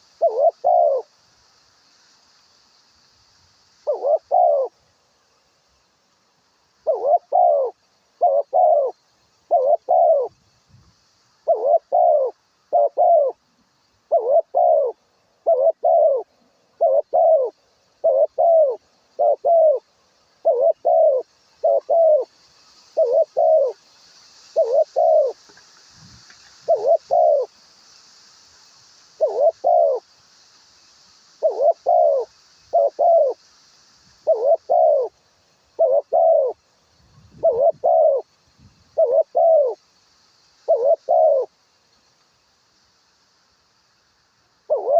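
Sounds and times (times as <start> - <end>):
dove cooing: 0.0 - 1.1, 3.8 - 4.8, 6.8 - 10.4, 11.4 - 13.4, 14.1 - 22.3, 23.0 - 23.8, 24.6 - 25.4, 26.6 - 27.5, 29.2 - 30.0, 31.4 - 33.4, 34.2 - 35.2, 35.8 - 36.6, 37.2 - 38.3, 39.0 - 39.8, 40.6 - 41.5, 44.7 - 44.9.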